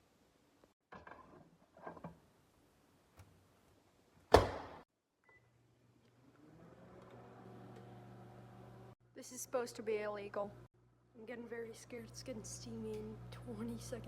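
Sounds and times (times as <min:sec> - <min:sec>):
microwave door thunk: 0:04.3 - 0:04.8
microwave humming: 0:06.1 - 0:09.0, 0:11.6 - 0:14.0.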